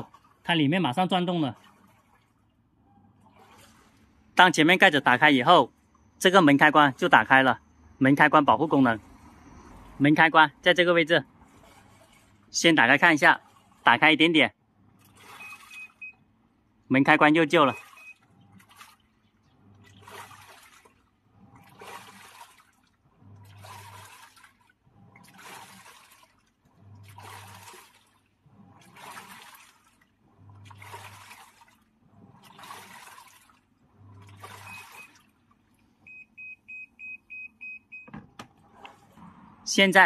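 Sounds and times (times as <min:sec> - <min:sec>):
washing machine drum sloshing: 0:00.0 - 0:40.0
short high beeps: 0:15.3 - 0:16.2, 0:17.6 - 0:18.2.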